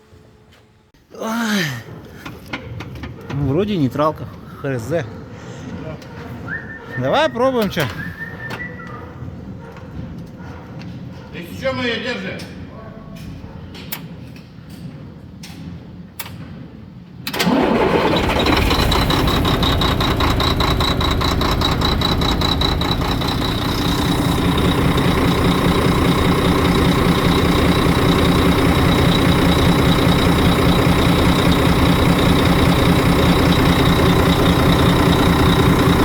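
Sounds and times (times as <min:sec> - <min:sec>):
diesel truck engine starting: 0:17.2 - 0:36.0
diesel engine idling: 0:17.4 - 0:36.0.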